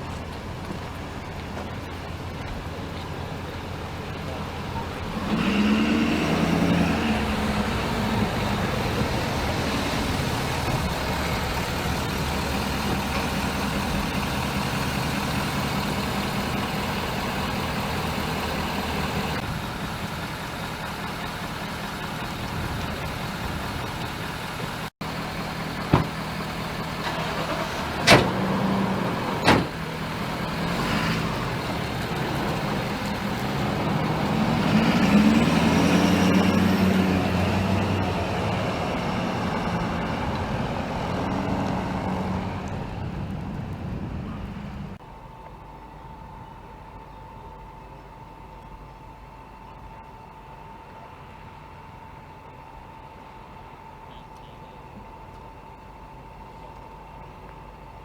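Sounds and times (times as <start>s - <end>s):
vehicle engine idling: 0.0s - 58.0s.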